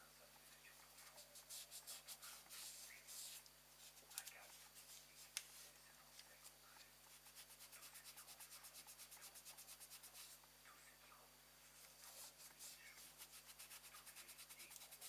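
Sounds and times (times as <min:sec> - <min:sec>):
fast rubbing strokes by hand: 0:01.1 - 0:05.7, 0:07.1 - 0:10.4, 0:12.1 - 0:15.0.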